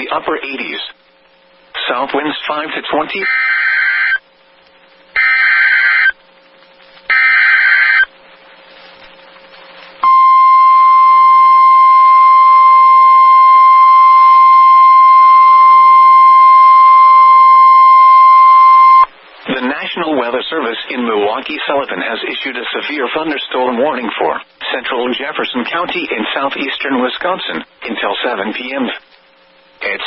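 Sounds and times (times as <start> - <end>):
screeching digital header tones: 3.2 - 4.2, 5.2 - 6.2, 7.1 - 8.1
steady warning alarm tone: 3.2 - 4.2, 5.2 - 6.2, 7.1 - 8.1, 10.0 - 19.1.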